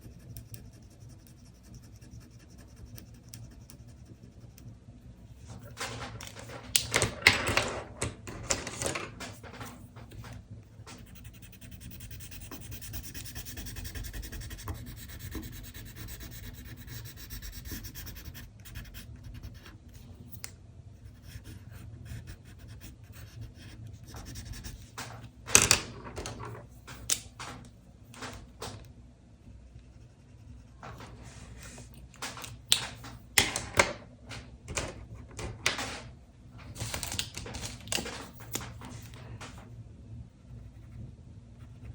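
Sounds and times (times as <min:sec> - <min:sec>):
pen scratching on paper: 0:00.0 - 0:04.7, 0:11.0 - 0:20.0, 0:21.0 - 0:24.9.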